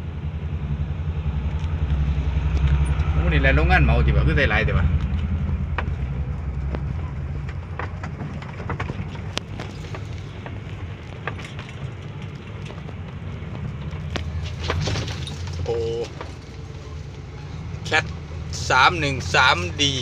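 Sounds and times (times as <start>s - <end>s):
vehicle engine humming: 0.0s - 20.0s
light clicks and knocks: 5.0s - 17.2s.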